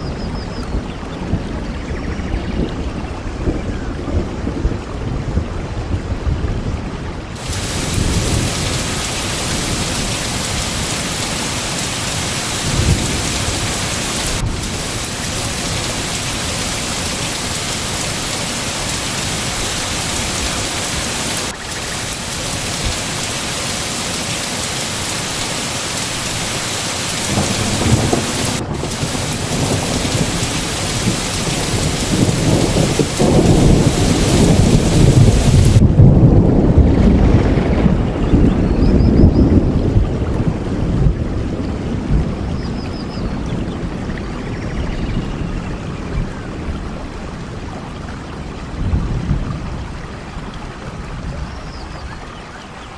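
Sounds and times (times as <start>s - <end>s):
heavy rain: 2.7s - 52.9s
thunder rumbling: 7.4s - 42.7s.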